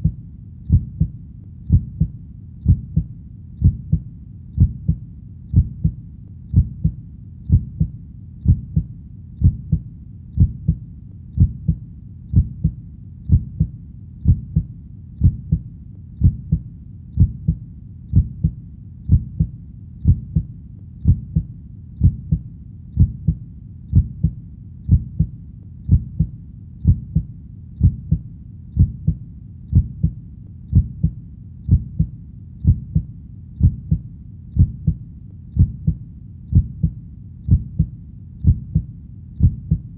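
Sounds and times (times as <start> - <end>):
faint low rumble: 0.0 - 39.9
heartbeat thumps: 0.0 - 39.9.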